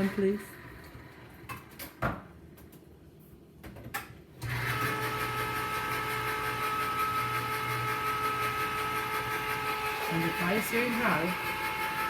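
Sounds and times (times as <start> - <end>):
electric can opener motor humming: 0.0 - 1.7, 4.4 - 12.0.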